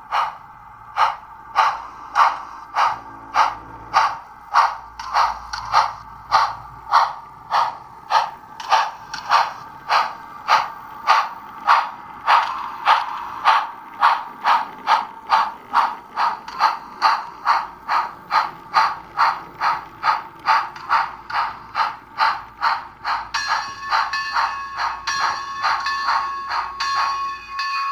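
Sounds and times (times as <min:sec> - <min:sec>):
model steam locomotive chuffs: 0:00.0 - 0:27.9.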